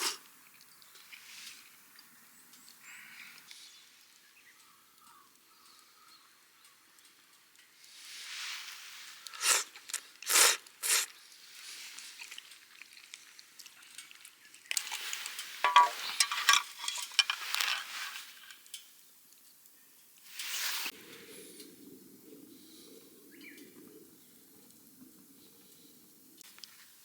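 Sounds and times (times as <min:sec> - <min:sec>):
crinkling rustling handling noise: 0:11.5 - 0:18.8.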